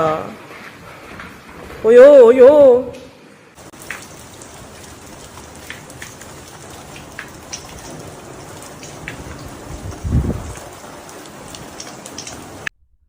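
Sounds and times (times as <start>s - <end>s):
heavy rain falling: 3.6s - 12.7s.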